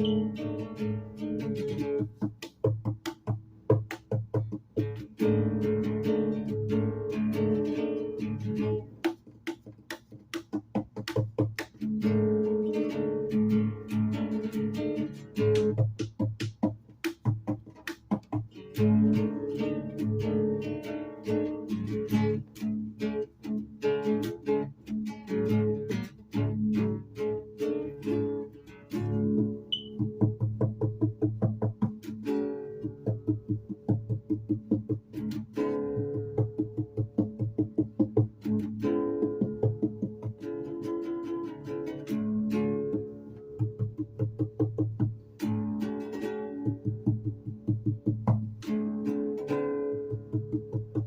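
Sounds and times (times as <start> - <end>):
plucked string instrument music: 0.0 - 51.0.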